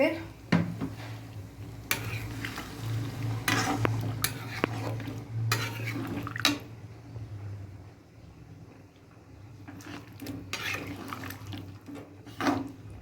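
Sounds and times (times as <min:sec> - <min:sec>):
spoon scraping a pot: 0:01.9 - 0:06.7, 0:09.7 - 0:12.9.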